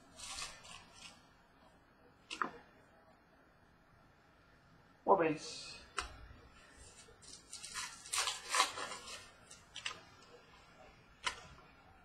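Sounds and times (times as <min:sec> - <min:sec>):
cards rustling and sliding: 0:00.1 - 0:01.2.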